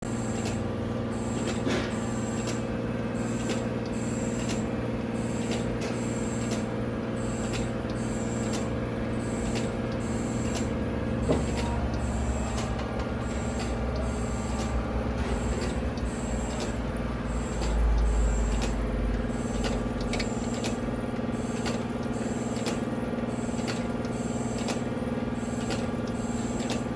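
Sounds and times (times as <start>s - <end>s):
grinder machine hum: 4.2s - 26.9s.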